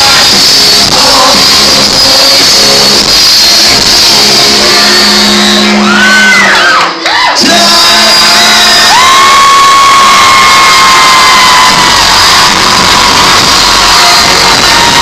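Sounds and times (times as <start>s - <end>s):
live rock band: 0.0s - 15.0s
audience screaming: 4.6s - 15.0s.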